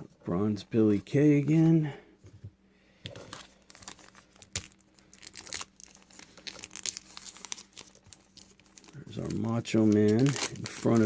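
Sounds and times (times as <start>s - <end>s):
paper wrapper crinkling: 3.1s - 11.0s.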